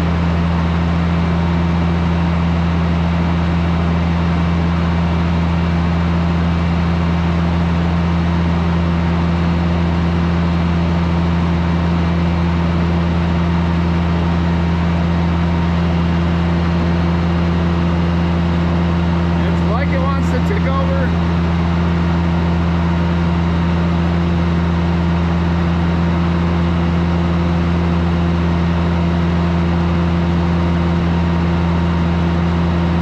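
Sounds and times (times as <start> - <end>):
tractor engine running: 0.0 - 33.0.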